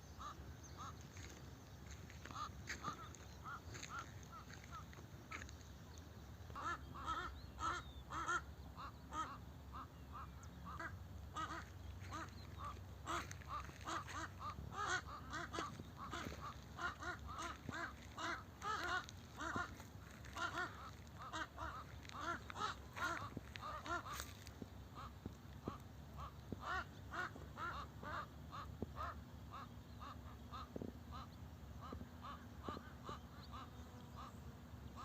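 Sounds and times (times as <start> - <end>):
crows cawing: 0.8 - 5.6, 10.8 - 24.6.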